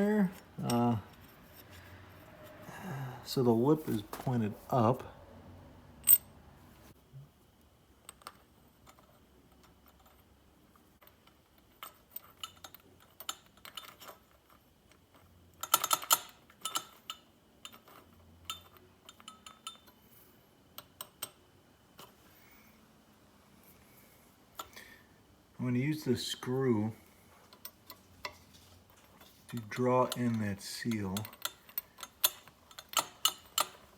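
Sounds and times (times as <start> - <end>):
metal parts and tools clinking: 6.0 - 6.3, 11.0 - 20.0, 27.5 - 33.9.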